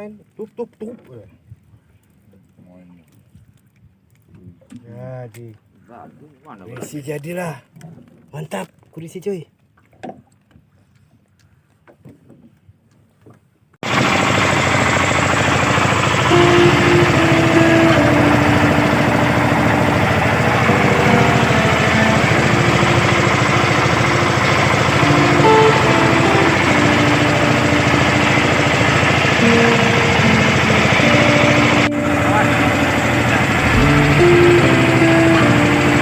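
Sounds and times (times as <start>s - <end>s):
boat engine running: 13.8s - 36.0s.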